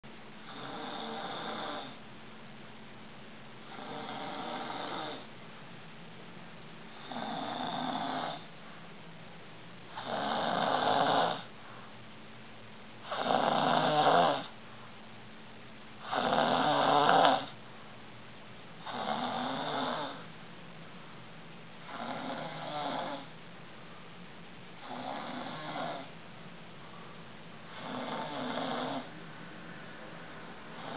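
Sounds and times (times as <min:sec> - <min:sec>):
man snoring: 0:00.4 - 0:02.0, 0:03.6 - 0:05.3, 0:06.9 - 0:08.4, 0:09.9 - 0:11.5, 0:13.0 - 0:14.5, 0:16.0 - 0:17.6, 0:18.8 - 0:20.2, 0:21.9 - 0:23.3, 0:24.8 - 0:26.1, 0:27.7 - 0:29.1.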